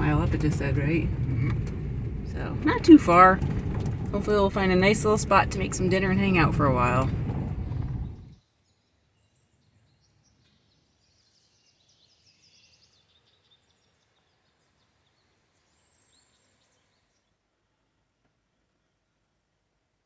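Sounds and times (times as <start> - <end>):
songbird trill: 8.1 - 17.3.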